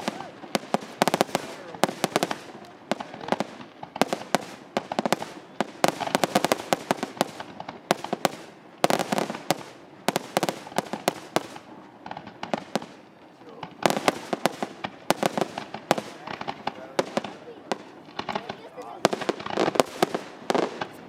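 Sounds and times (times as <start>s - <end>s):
fireworks cracking and popping: 0.0s - 21.0s.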